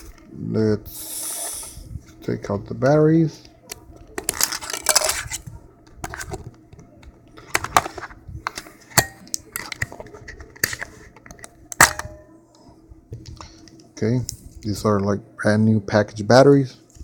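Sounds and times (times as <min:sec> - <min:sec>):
clicks and clatter of batteries: 0:04.1 - 0:05.4, 0:06.0 - 0:12.2.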